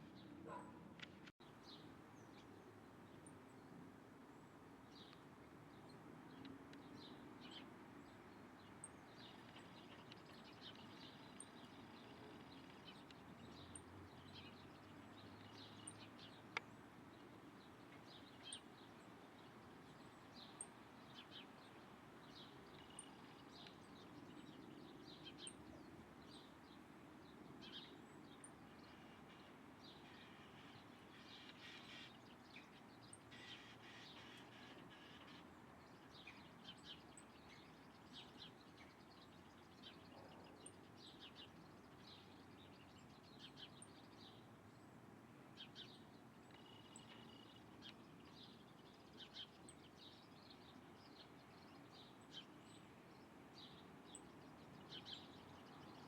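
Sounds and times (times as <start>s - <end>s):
faint bird chirps: 45.6s - 56.0s.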